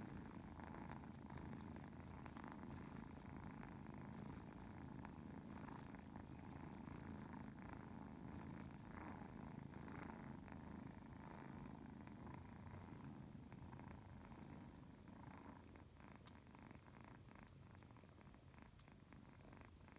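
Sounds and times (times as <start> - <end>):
cat purring: 0.0 - 19.9.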